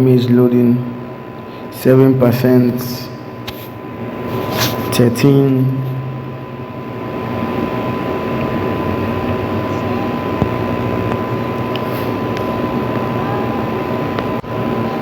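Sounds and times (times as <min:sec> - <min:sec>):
low machine hum: 0:00.0 - 0:15.0
thin steady high tone: 0:04.0 - 0:15.0.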